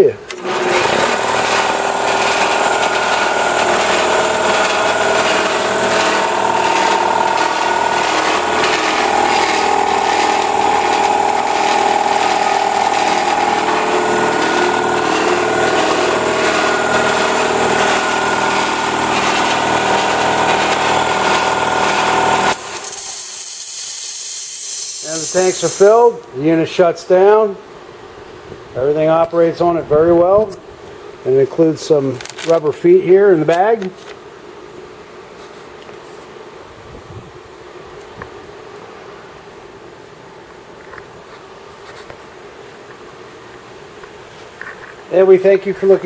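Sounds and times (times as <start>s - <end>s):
air compressor running: 0.3s - 26.3s.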